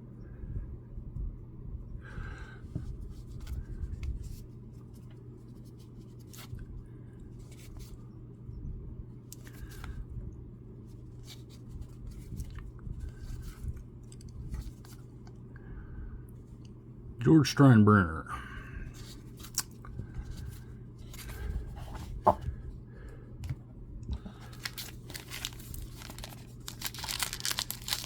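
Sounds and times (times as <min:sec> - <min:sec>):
trading cards flipped through: 0:19.0 - 0:19.8.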